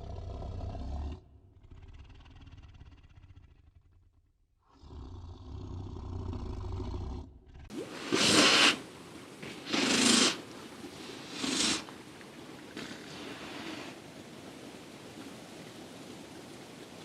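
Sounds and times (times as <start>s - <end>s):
animal growling low: 0.0s - 4.0s, 4.6s - 8.3s
loud breathy hisses: 7.7s - 12.0s, 12.8s - 14.0s.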